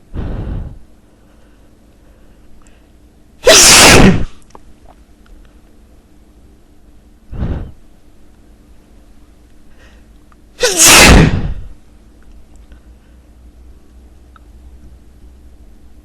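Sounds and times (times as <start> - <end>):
man sneezing: 3.4 - 4.3, 10.6 - 11.7.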